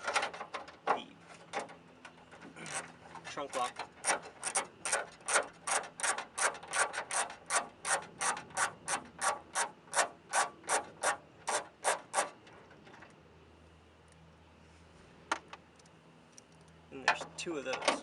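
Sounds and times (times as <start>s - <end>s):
ratchet clicking: 4.0s - 12.3s.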